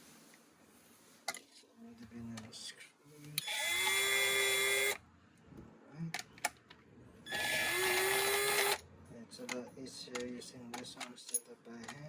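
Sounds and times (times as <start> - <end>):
power drill running: 3.4 - 5.0, 7.3 - 8.8.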